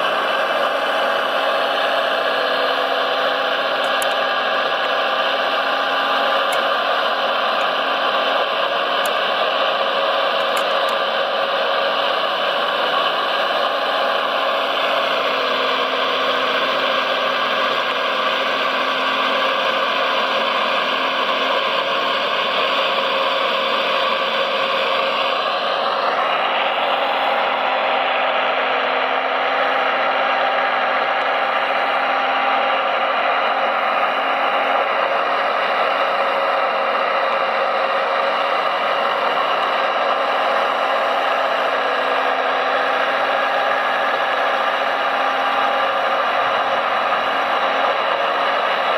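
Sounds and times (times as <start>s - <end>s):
electric motors whining: 0.0s - 48.9s.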